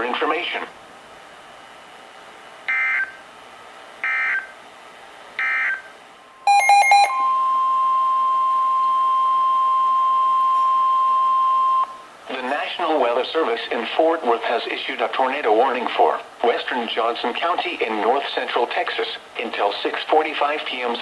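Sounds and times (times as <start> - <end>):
steady warning alarm tone: 2.7 - 3.2, 4.0 - 4.6, 5.4 - 12.1
jumble of beeping tones: 5.4 - 12.0.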